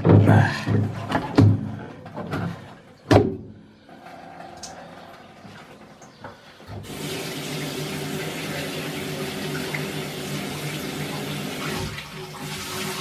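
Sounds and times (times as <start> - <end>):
water running hard: 6.8 - 13.0.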